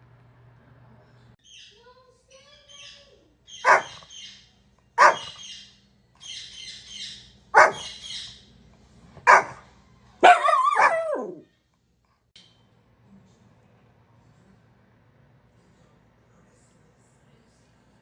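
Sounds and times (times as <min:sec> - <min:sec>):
dog barking: 0:03.6 - 0:04.1, 0:05.0 - 0:05.4, 0:07.6 - 0:08.1, 0:09.2 - 0:09.6, 0:10.2 - 0:11.4
dog yapping: 0:03.6 - 0:04.1, 0:05.0 - 0:05.4, 0:07.6 - 0:08.1, 0:09.3 - 0:09.6, 0:10.2 - 0:11.4.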